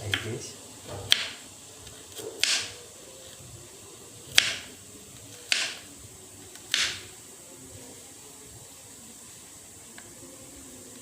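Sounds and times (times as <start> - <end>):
kitchen knife chopping root: 1.0 - 1.4, 2.1 - 2.8, 4.3 - 4.7, 5.4 - 5.8, 6.6 - 7.1.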